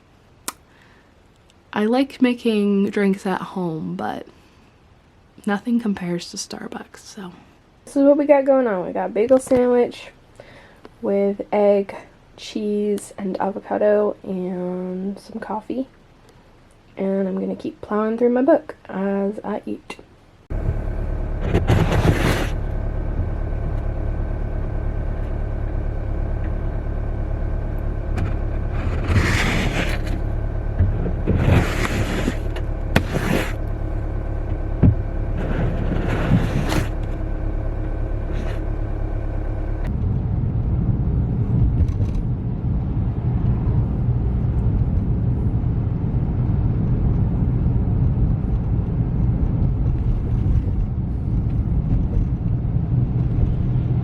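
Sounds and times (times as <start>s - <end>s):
car engine low rumble: 20.2s - 54.0s.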